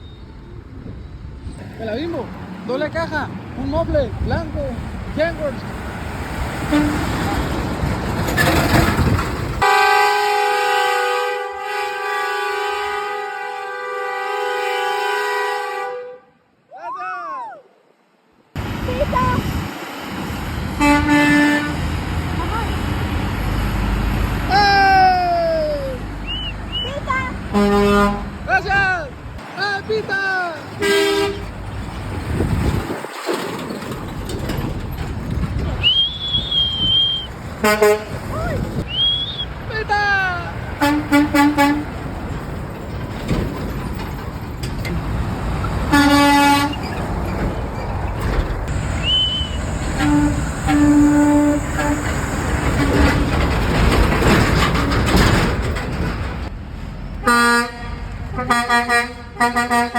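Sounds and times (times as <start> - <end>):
rumbling truck traffic: 0.0 - 16.4, 18.6 - 59.9
truck air horn chord: 9.6 - 16.4, 20.8 - 21.8, 27.5 - 28.3, 45.9 - 46.7, 49.1 - 52.0, 57.2 - 59.9.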